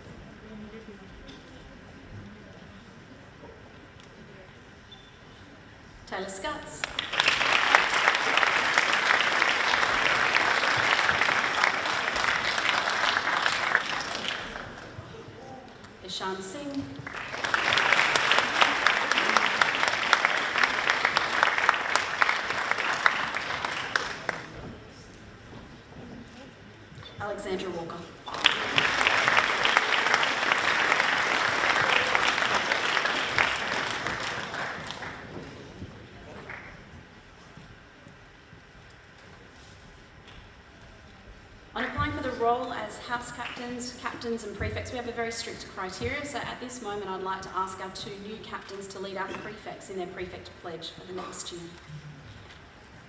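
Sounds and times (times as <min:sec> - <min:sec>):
audience clapping: 0:06.8 - 0:16.0, 0:16.7 - 0:24.9, 0:28.2 - 0:37.2.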